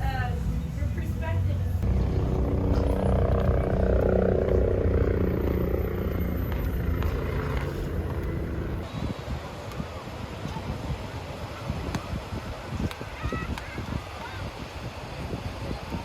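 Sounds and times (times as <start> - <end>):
engine running: 1.4 - 8.9.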